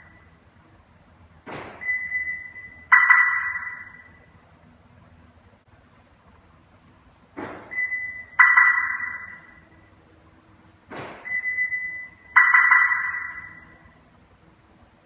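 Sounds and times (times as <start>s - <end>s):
car siren: 1.8s - 4.3s, 7.7s - 9.9s, 11.3s - 14.0s
loud siren chirp: 1.8s - 4.3s, 7.7s - 10.0s, 11.3s - 14.0s.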